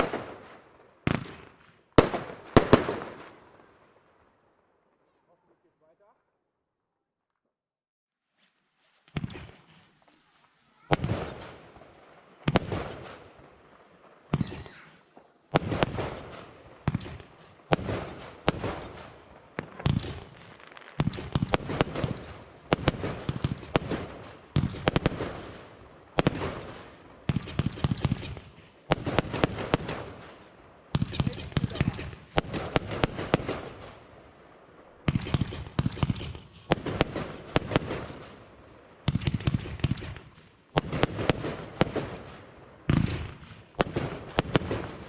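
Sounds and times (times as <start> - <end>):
firework bangs: 0.0 - 4.1, 10.8 - 13.4, 14.1 - 30.4, 31.0 - 45.0.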